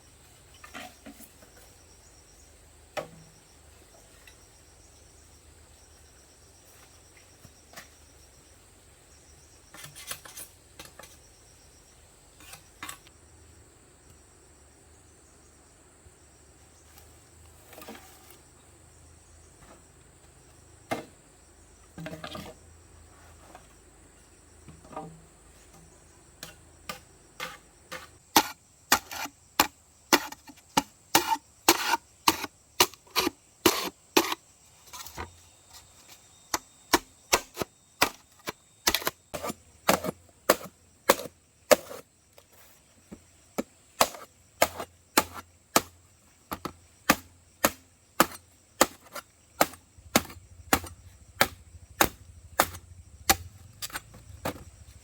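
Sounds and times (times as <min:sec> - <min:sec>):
tool striking bamboo: 0:26.4 - 0:35.3, 0:36.5 - 0:42.0, 0:44.0 - 0:54.7.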